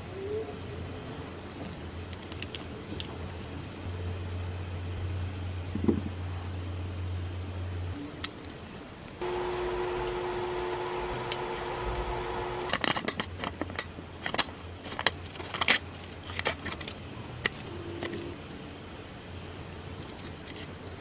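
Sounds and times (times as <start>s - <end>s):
small motor humming: 9.2s - 12.8s.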